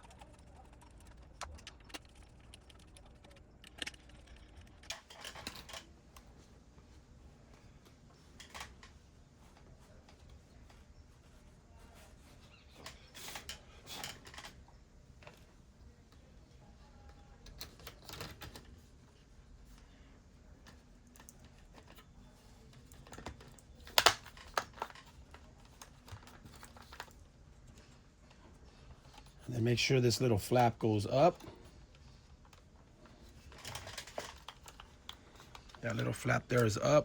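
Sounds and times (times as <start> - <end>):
light clicks of small parts: 20.6 - 29.5, 30.5 - 37.0.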